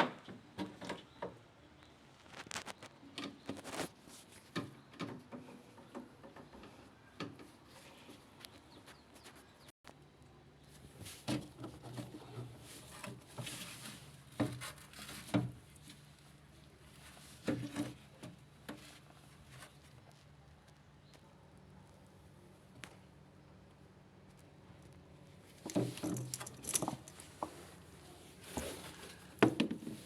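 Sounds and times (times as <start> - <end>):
hands handling parts: 25.5 - 27.8.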